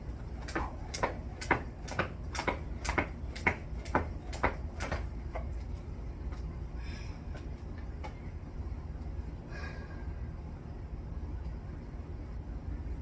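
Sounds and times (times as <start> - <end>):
jump rope slapping the floor: 0.1 - 6.5.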